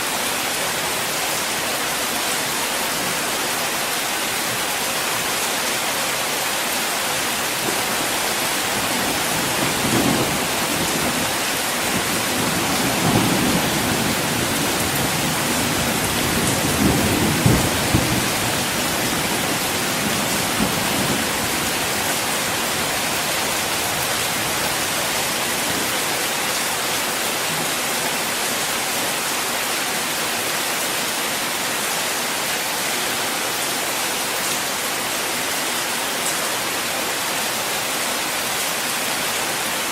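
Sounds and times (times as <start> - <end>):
rain falling on a car: 0.2 - 31.5
thunder rumbling: 7.6 - 22.1.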